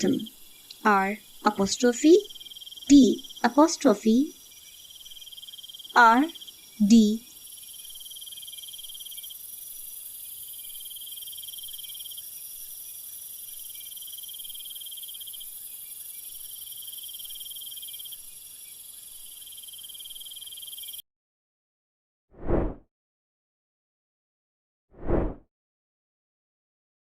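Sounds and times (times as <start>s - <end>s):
crickets chirping: 0.0s - 21.0s.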